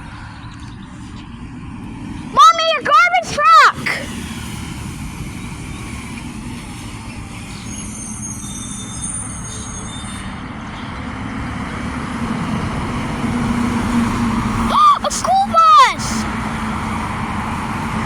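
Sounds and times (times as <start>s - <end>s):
thin high squeal: 7.3s - 10.4s.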